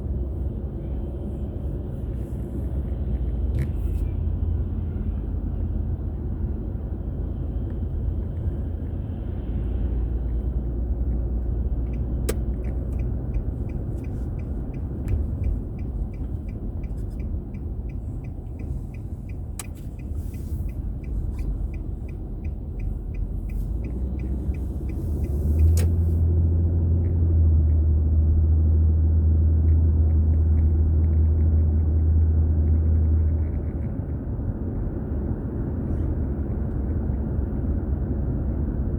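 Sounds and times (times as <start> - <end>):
car rumbling from inside cabin: 0.0 - 38.9
turn signal ticking: 10.2 - 27.9.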